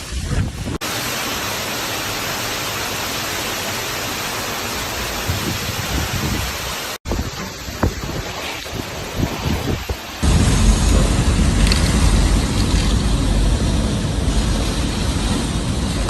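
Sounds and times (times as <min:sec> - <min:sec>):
heavy rain and wind hiss: 0:00.0 - 0:16.0
low rumble: 0:10.2 - 0:16.0.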